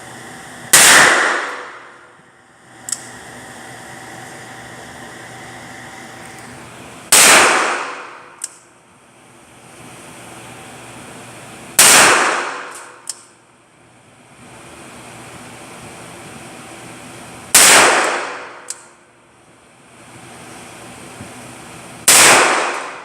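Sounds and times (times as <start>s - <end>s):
echoing gunshots: 0.7s - 2.0s, 7.1s - 8.4s, 11.8s - 12.9s, 17.6s - 18.7s, 22.1s - 23.0s
small sharp click: 2.8s - 3.1s, 8.4s - 8.6s, 12.7s - 13.3s, 18.6s - 18.9s.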